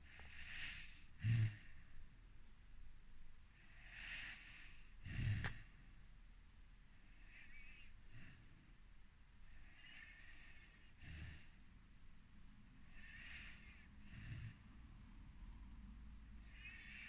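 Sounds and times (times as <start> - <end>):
puppy snoring: 0.1 - 2.0, 3.6 - 5.9, 7.2 - 8.6, 9.6 - 11.6, 12.9 - 14.8, 16.4 - 17.0.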